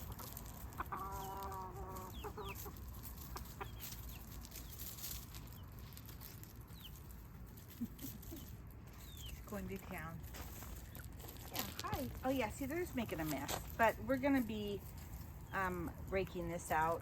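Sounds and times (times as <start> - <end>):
hen clucking: 0.0 - 9.4
chick peeping: 0.0 - 9.9
scratching in dry leaves: 0.0 - 17.0.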